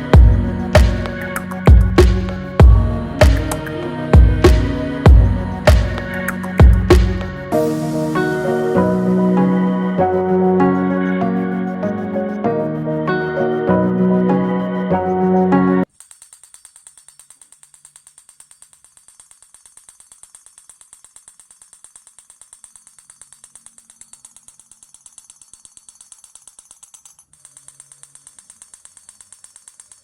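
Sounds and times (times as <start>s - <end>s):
small motor metallic clicks: 15.9s - 30.0s.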